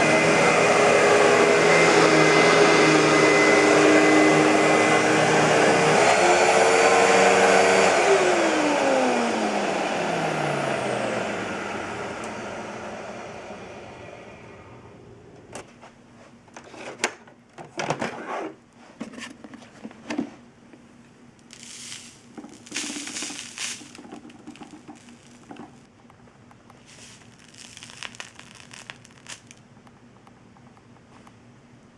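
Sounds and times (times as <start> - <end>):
vacuum cleaner motor winding down: 0.0 - 15.5, 21.5 - 25.8.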